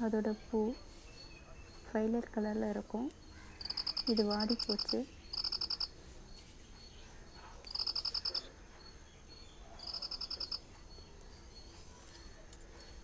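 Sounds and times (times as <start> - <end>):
faint steady background: 0.0 - 13.0
small animal high-pitched trill: 3.2 - 6.5, 7.6 - 8.5, 9.8 - 13.0.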